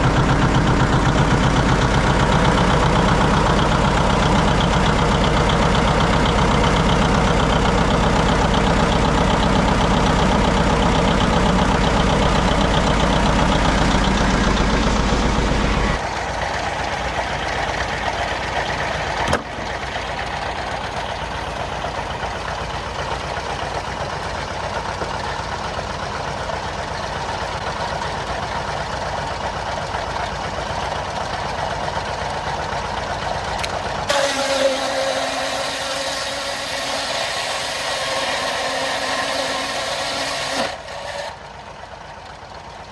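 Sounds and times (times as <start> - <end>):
tractor engine rumbling: 0.0 - 42.9
sharp click: 33.6 - 33.8.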